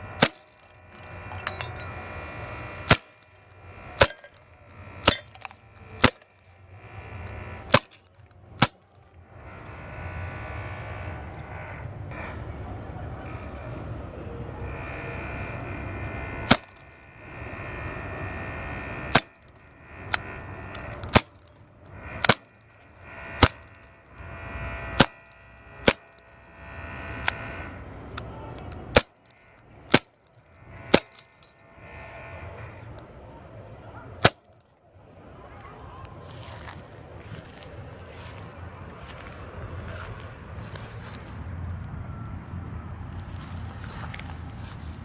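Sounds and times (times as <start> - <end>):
steady background hum: 0.0 - 45.0
air pistol shots cracking: 0.1 - 1.9, 2.9 - 3.4, 4.0 - 4.4, 5.0 - 6.4, 7.2 - 8.8, 16.5 - 16.9, 19.1 - 19.4, 20.1 - 21.5, 22.2 - 22.5, 23.4 - 23.8, 24.9 - 26.2, 28.6 - 29.3, 29.9 - 30.2, 30.8 - 31.3, 34.2 - 34.6.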